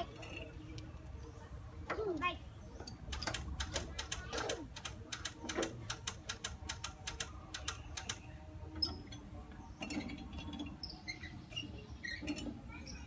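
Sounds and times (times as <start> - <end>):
rapid sharp clicks: 3.1 - 8.2.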